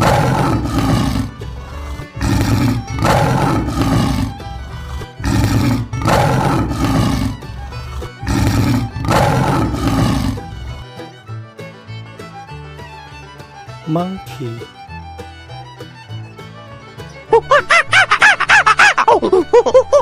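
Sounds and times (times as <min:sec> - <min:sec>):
lion roaring: 0:00.0 - 0:10.9
background music: 0:00.0 - 0:20.0.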